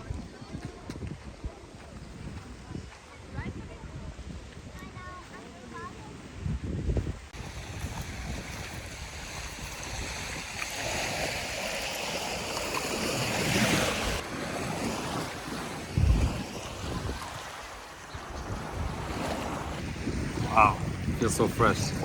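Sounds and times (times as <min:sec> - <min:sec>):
wind buffeting microphone: 0:00.0 - 0:22.0
lake waves washing on shore: 0:07.2 - 0:22.0.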